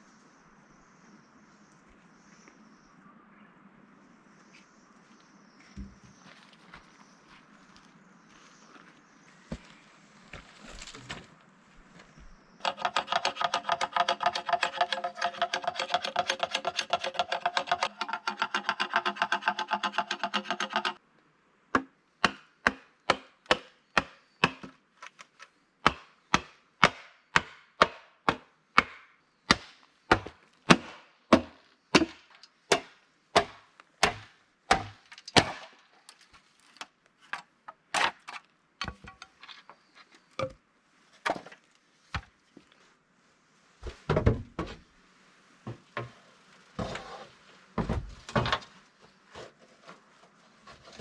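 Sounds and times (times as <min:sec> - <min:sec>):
hand tool striking wood: 0:12.6 - 0:21.0, 0:21.8 - 0:24.8, 0:25.8 - 0:35.8.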